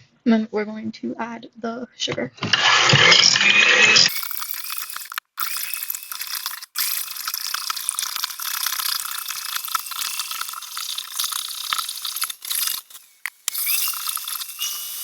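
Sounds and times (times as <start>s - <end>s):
whisk beating eggs in bowl: 4.1s - 15.0s.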